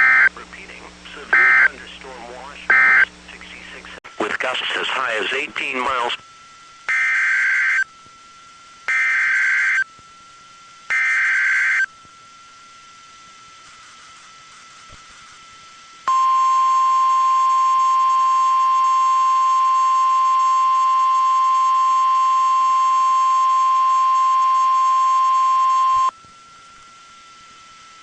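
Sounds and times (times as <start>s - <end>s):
loud steady alarm tone: 0.0s - 0.3s, 1.3s - 1.8s, 2.7s - 3.1s, 6.9s - 7.9s, 8.9s - 9.9s, 10.9s - 11.9s, 16.1s - 26.6s
faint radio hiss with whine: 0.0s - 28.0s.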